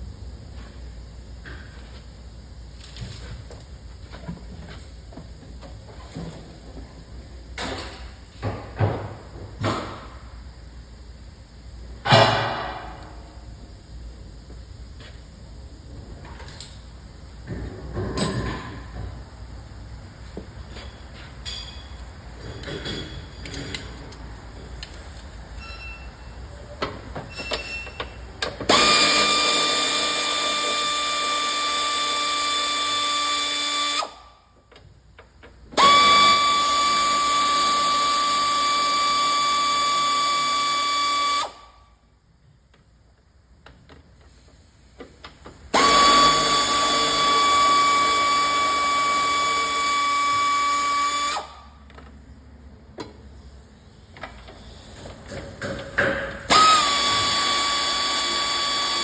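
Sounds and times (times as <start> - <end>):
metal clinks: 21.4 - 23.9
power tool whining: 28.7 - 34.3, 35.8 - 41.7, 45.7 - 51.7, 56.5 - 59.0.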